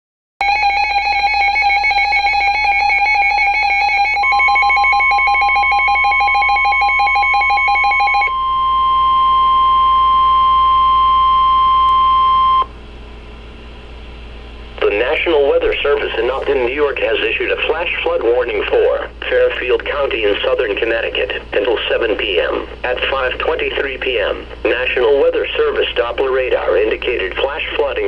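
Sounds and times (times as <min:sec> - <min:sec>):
harsh warbling alarm tone: 0:00.4 - 0:12.7, 0:14.8 - 0:19.7
steady single-pitch tone: 0:00.4 - 0:16.4
low hum: 0:08.3 - 0:25.8.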